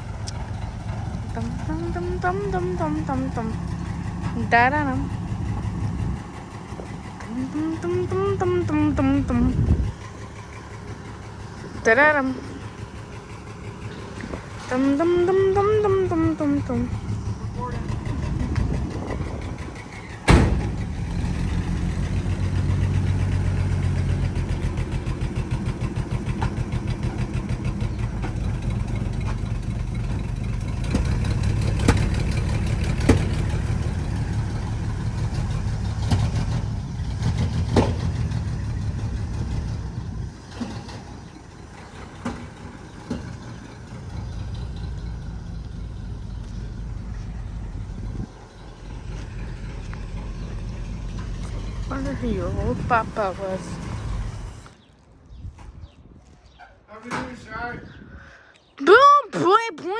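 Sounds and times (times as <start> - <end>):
car engine running: 0.0 - 54.9
sharp clunks: 20.2 - 20.9, 33.0 - 33.5, 37.6 - 38.2.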